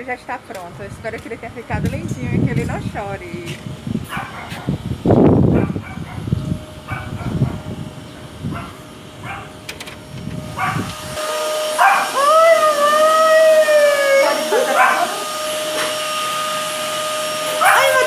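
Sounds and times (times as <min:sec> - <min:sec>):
blow dryer whine: 0:00.0 - 0:18.0
rumbling and knocking handling noise: 0:09.5 - 0:11.1
dog whining and howling: 0:10.6 - 0:16.6, 0:17.4 - 0:18.0.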